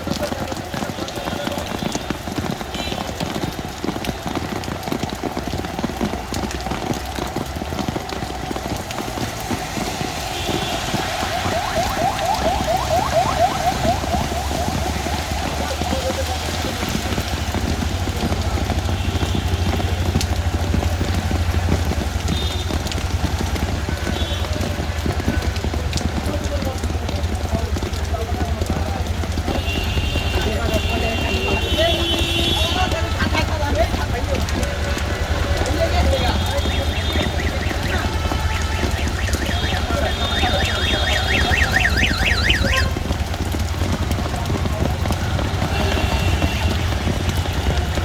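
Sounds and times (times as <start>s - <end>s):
heavy rain on a hard surface: 0.0s - 48.0s.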